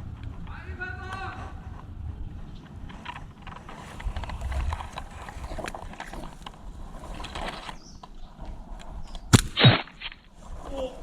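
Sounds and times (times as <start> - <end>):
rustling of gear and brush: 2.6 - 11.0
sharp crack: 9.1 - 10.5.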